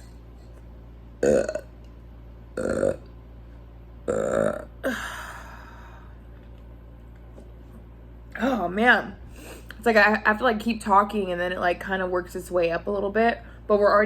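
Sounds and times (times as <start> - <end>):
woman burping: 1.2 - 1.7, 2.6 - 3.1, 4.1 - 5.5.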